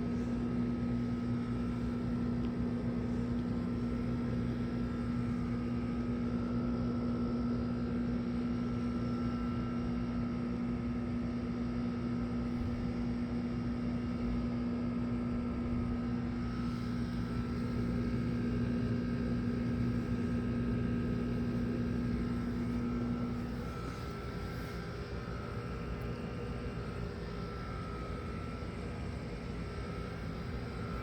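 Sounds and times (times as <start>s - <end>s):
small motor humming: 16.4s - 31.0s.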